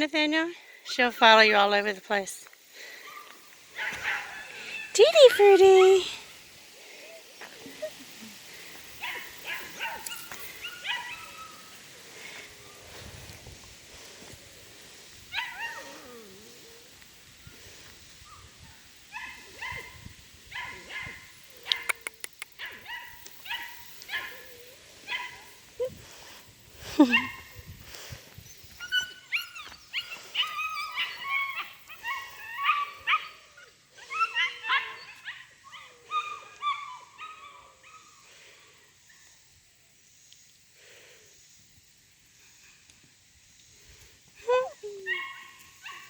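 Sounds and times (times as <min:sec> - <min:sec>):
puppy yipping and whining: 0:28.8 - 0:38.0.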